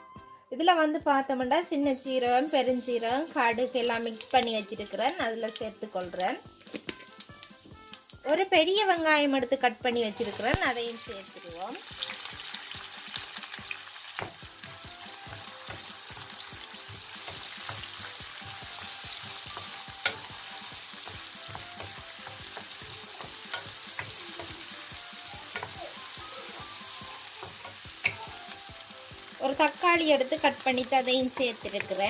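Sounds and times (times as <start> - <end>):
onion sizzling in hot oil: 1.7 - 32.0
stirring in a pan: 11.9 - 32.0.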